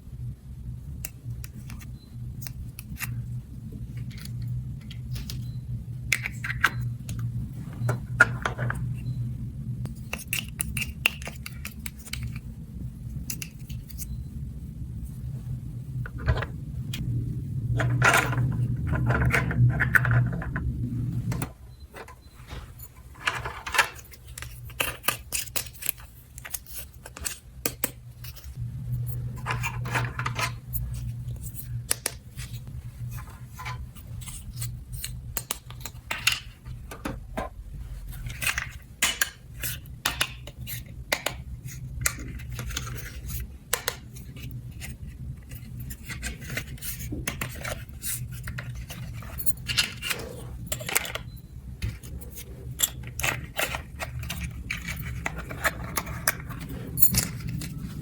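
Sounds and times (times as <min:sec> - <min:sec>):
low steady hum: 0:00.0 - 0:58.0
plastic toy pieces clattering: 0:46.0 - 0:51.2.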